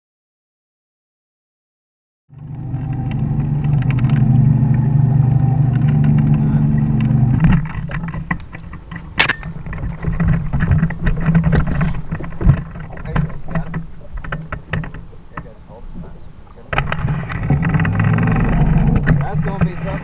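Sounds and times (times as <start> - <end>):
boat motor humming: 2.3 - 20.0
sharp crack: 5.6 - 20.0
knocks and clatter: 5.7 - 15.6, 16.7 - 20.0.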